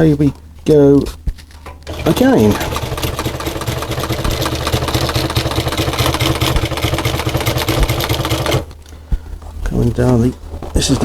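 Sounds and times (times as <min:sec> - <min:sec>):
sewing machine stitching: 0:01.6 - 0:08.8.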